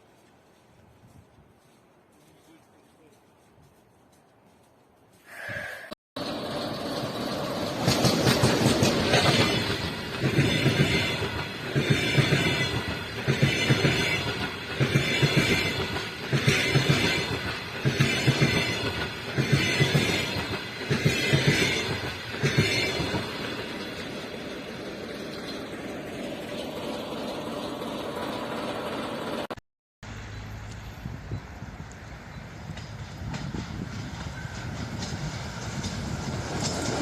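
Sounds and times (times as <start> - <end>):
wheels clattering over rail joints: 6.2 - 29.0
electric train passing: 6.2 - 37.0.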